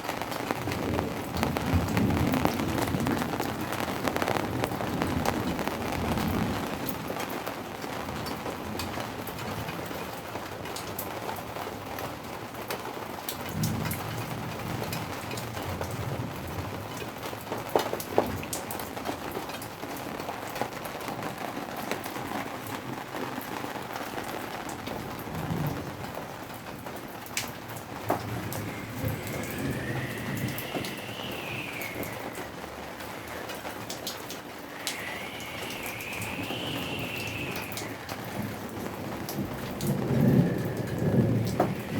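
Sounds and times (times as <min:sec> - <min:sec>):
steady rain falling: 0:00.0 - 0:41.9
low rumbles: 0:27.8 - 0:33.3.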